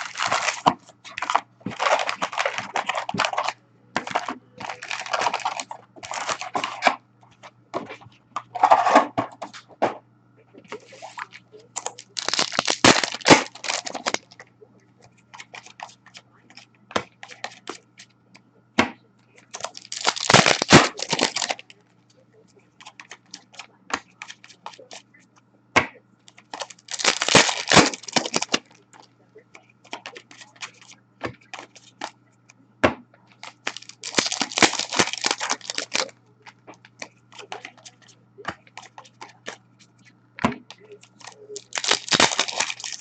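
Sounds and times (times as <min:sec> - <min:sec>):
card pack wrapper tearing: 0:00.0 - 0:06.9, 0:11.0 - 0:14.4, 0:19.5 - 0:21.7, 0:26.4 - 0:29.0, 0:33.4 - 0:36.1, 0:41.1 - 0:43.0
cards clicking and rustling: 0:00.0 - 0:09.6, 0:10.7 - 0:14.4, 0:19.4 - 0:21.8, 0:26.3 - 0:29.1, 0:29.9 - 0:32.2, 0:33.3 - 0:43.0.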